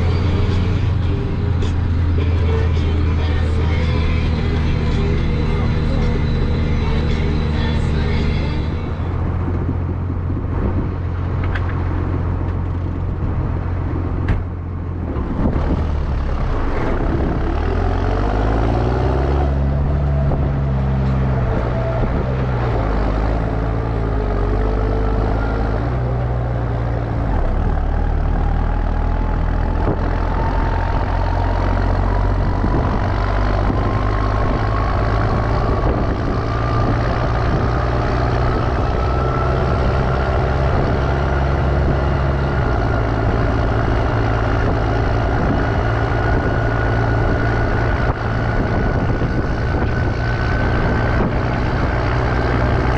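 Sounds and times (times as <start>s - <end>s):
excavator diesel engine running: 0.0s - 52.9s.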